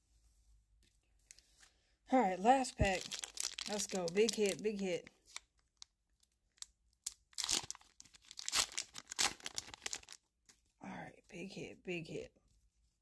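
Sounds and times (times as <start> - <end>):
foil wrapper tearing and crinkling: 2.7 - 5.9, 6.5 - 10.2.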